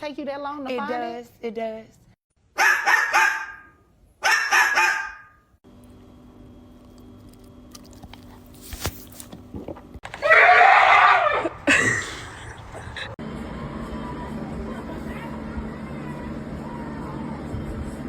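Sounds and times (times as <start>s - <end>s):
dog crying loudly: 10.2s - 11.6s.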